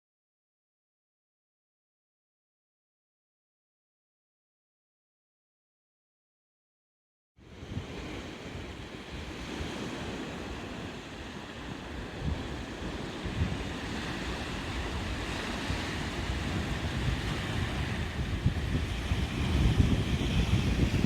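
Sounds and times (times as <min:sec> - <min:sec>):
waves washing against shore: 0:07.4 - 0:21.0
wind buffeting microphone: 0:07.4 - 0:21.0.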